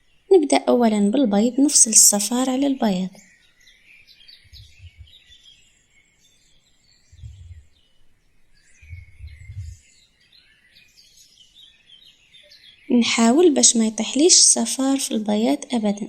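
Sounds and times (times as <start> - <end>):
faint birds chirping: 0.0 - 16.0
soft dull thuds: 4.4 - 5.2, 7.2 - 7.7, 8.8 - 9.8.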